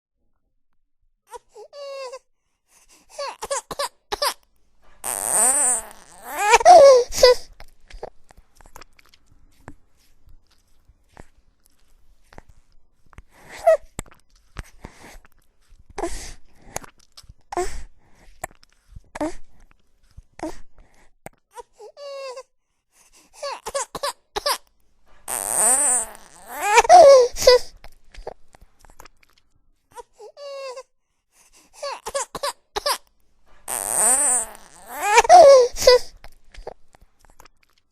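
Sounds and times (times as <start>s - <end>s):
baby whimpering and crying: 1.3s - 2.3s, 3.1s - 4.4s, 5.0s - 8.1s, 21.5s - 22.5s, 23.4s - 24.6s, 25.3s - 28.4s, 30.0s - 31.0s, 31.7s - 33.0s, 33.7s - 36.8s.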